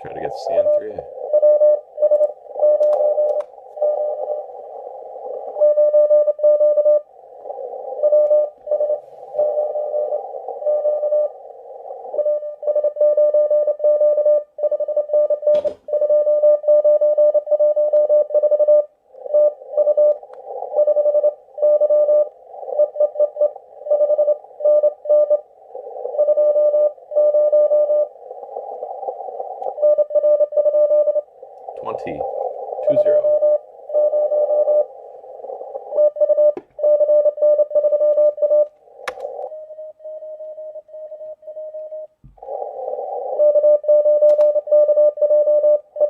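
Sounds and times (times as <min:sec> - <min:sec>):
radio receiver hiss: 0:02.3 - 0:05.7, 0:28.1 - 0:29.9, 0:31.2 - 0:36.9.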